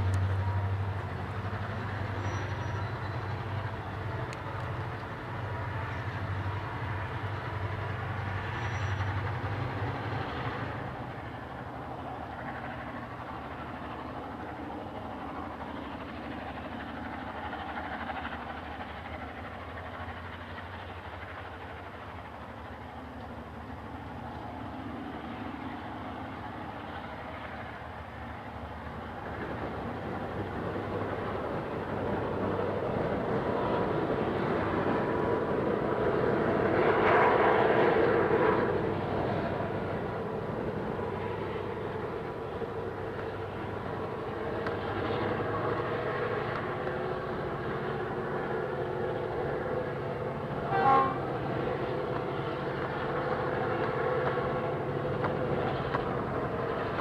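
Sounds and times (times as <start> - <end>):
diesel locomotive engine drone: 0.0 - 57.0.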